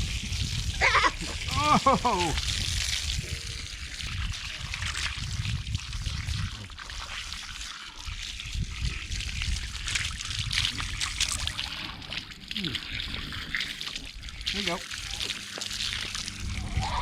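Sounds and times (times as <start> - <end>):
water pouring and splashing: 0.0 - 17.0
low rumble: 9.6 - 17.0.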